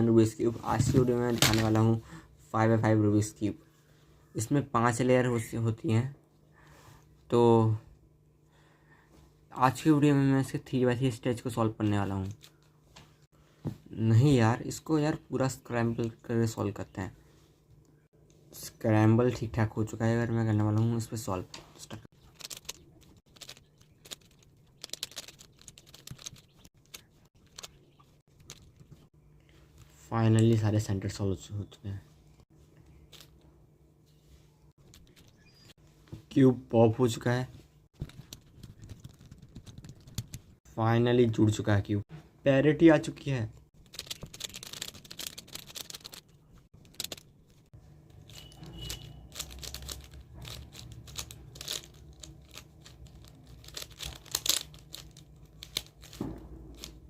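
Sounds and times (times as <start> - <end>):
plastic puzzle cube clicking: 22.4 - 27.8, 43.9 - 47.3, 49.3 - 57.0.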